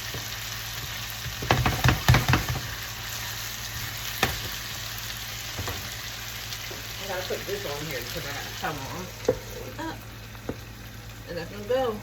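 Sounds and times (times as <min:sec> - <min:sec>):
vegetables sizzling in a pan: 0:00.0 - 0:12.0
clattering knocks in pan: 0:00.1 - 0:02.8, 0:04.2 - 0:04.6, 0:05.5 - 0:05.9.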